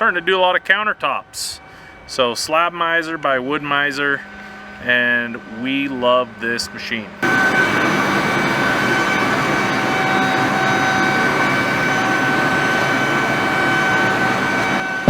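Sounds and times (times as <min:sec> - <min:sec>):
high motor whine: 0:07.2 - 0:15.0
mill rushing noise: 0:07.2 - 0:15.0.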